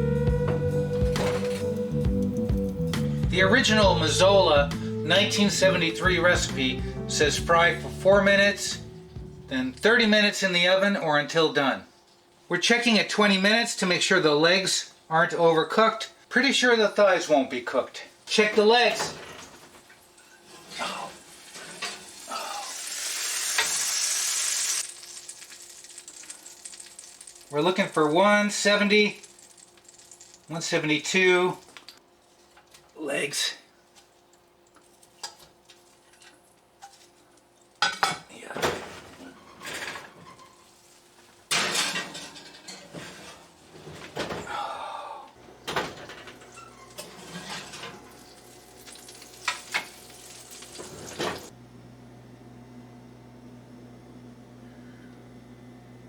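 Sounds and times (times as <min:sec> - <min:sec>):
chicken sizzling in hot fat: 0:19.9 - 0:31.9, 0:40.5 - 0:41.5, 0:46.4 - 0:51.5
cookware clattering: 0:37.8 - 0:39.0, 0:41.5 - 0:43.4.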